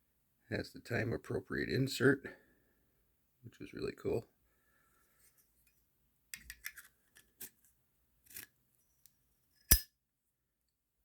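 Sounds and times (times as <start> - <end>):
lighter metal clicks and scrapes: 9.7 - 9.9.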